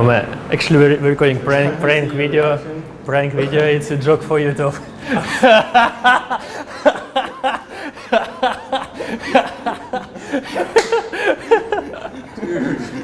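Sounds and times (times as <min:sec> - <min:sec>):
people laughing: 0:04.7 - 0:13.0.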